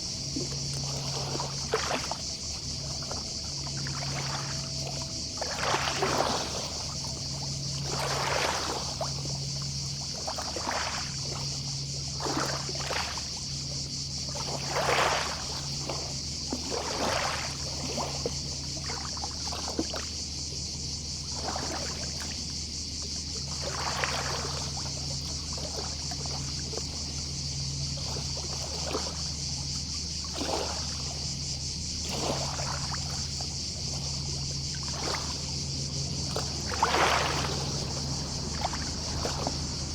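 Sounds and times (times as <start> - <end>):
low hum: 0.0 - 16.5, 24.4 - 39.9
gentle waves washing on beach: 0.0 - 20.4, 21.1 - 39.9
distant cicadas: 0.0 - 39.9.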